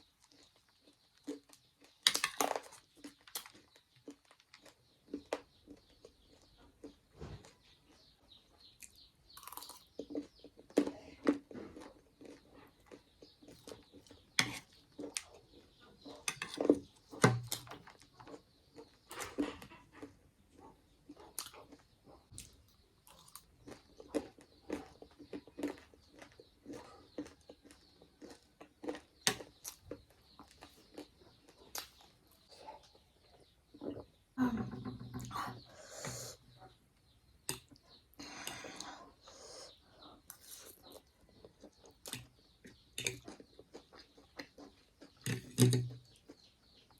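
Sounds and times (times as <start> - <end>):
person chewing food: 0.0 - 34.3, 35.2 - 46.9.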